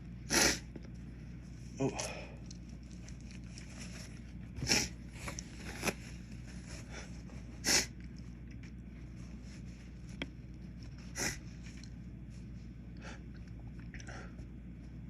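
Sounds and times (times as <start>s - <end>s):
sniffs and snorts: 0.2s - 0.7s, 4.6s - 5.0s, 6.8s - 8.0s, 11.0s - 11.6s.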